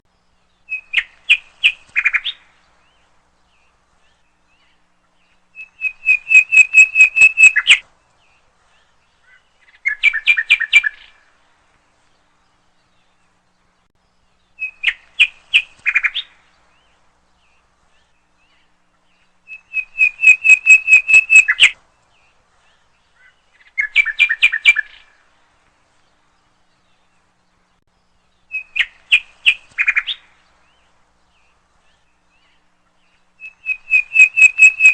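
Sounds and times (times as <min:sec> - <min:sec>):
bird singing sharp repeated notes: 0:04.3 - 0:07.8, 0:19.2 - 0:21.8, 0:28.4 - 0:34.9.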